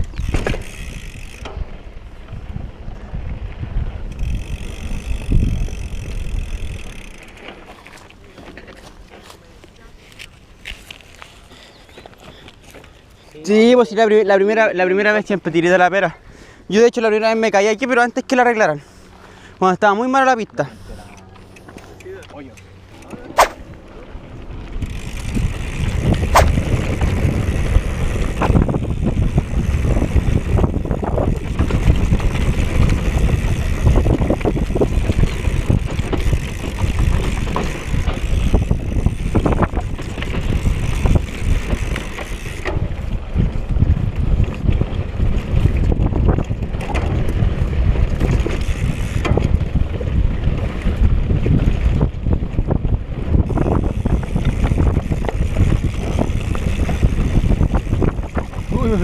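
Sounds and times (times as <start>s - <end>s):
wind rumble on microphone: 0.0s - 9.2s, 22.7s - 59.0s
bike rattling over ground: 0.0s - 16.0s, 20.1s - 59.0s.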